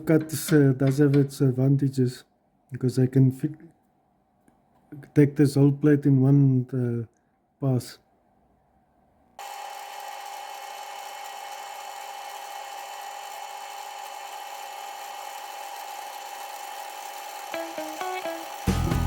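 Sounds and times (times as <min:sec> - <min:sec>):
milling machine whine: 0:09.4 - 0:19.0.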